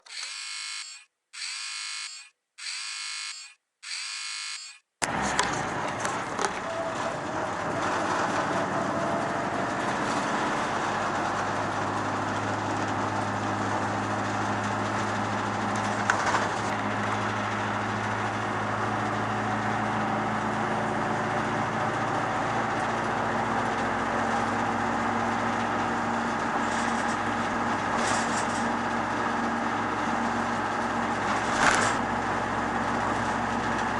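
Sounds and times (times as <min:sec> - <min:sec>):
short electronic beeps: 0:00.2 - 0:04.8
diesel truck engine running: 0:05.0 - 0:33.9.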